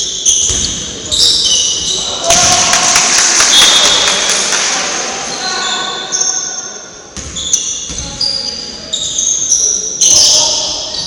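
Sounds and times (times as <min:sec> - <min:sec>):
shoes squeaking on floor: 0:00.0 - 0:02.1, 0:07.2 - 0:11.0
echoing hall din: 0:00.0 - 0:08.2
basketball bouncing on court: 0:00.3 - 0:00.9, 0:07.2 - 0:08.2.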